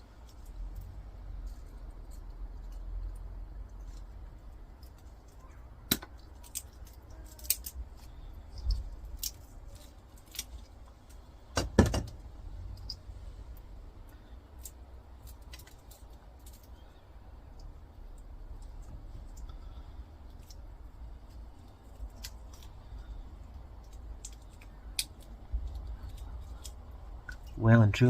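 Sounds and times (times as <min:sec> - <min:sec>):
hand snips cutting plastic: 0:05.8 - 0:09.5.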